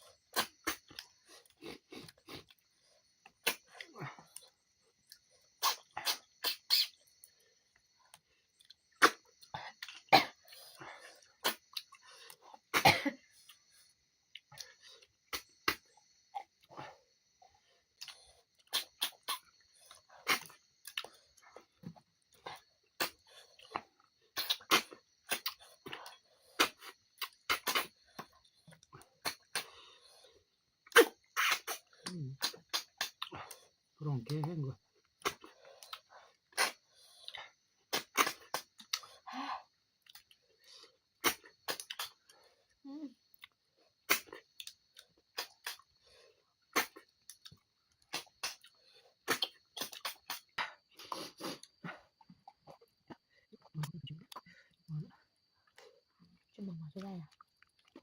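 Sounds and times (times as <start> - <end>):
slurps sucking snails from shells: 0.0 - 12.7, 13.3 - 34.0, 34.8 - 56.5
short sharp slurps: 5.6 - 7.0, 18.7 - 19.5, 31.0 - 33.2, 44.1 - 44.4, 49.3 - 51.7.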